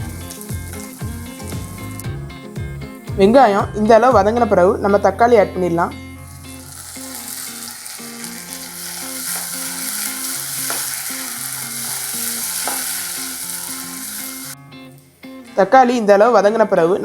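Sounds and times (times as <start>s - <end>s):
onions sizzling in a pan: 0.0s - 2.0s, 6.2s - 15.0s
spoon scraping a pan: 6.7s - 14.6s.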